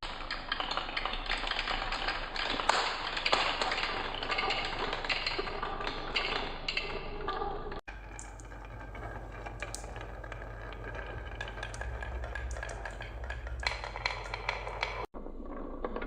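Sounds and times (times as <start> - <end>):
marbles clattering down wooden run: 0.0 - 7.0, 7.9 - 16.0
low steady hum: 7.9 - 15.1.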